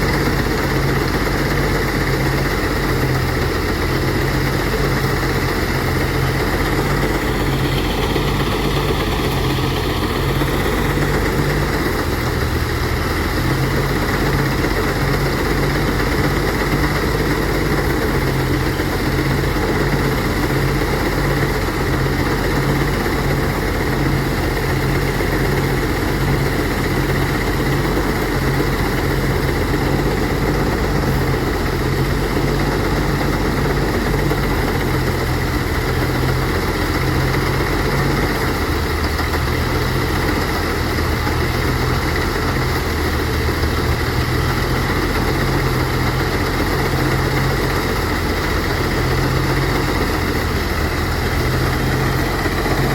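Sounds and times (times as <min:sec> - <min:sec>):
threshing machine engine drone: 0:00.0 - 0:52.9.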